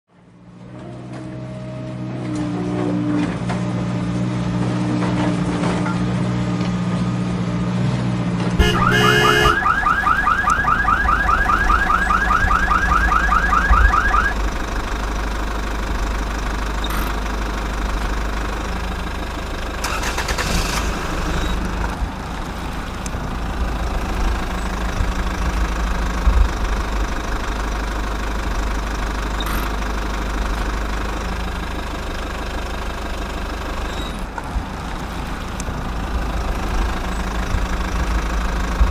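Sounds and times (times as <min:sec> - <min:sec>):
simulated engine idle rumble: 0:08.6 - 0:38.9.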